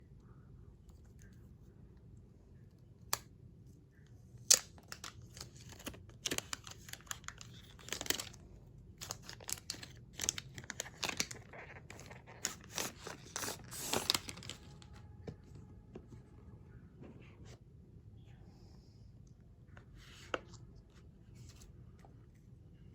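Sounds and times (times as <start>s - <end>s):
packaging tearing and crinkling: 4.5s - 8.4s, 9.0s - 15.0s.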